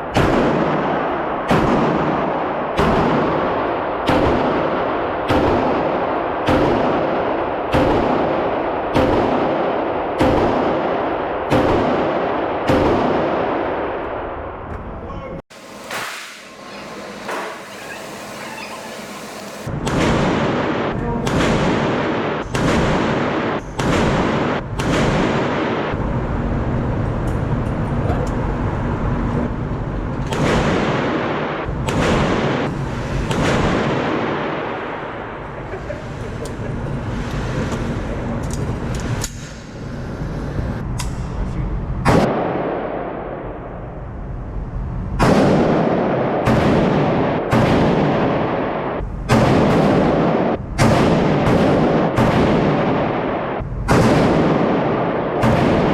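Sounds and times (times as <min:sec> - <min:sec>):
echoing gunshots: 0:00.0 - 0:14.7, 0:15.5 - 0:26.7, 0:30.2 - 0:36.2, 0:42.0 - 0:44.1, 0:45.2 - 0:55.9.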